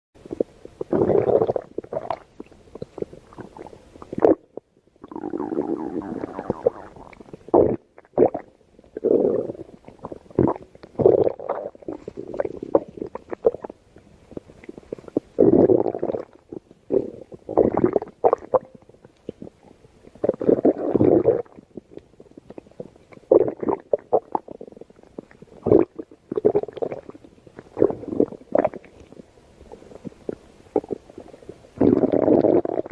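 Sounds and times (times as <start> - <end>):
stomach growling: 0.3 - 32.9.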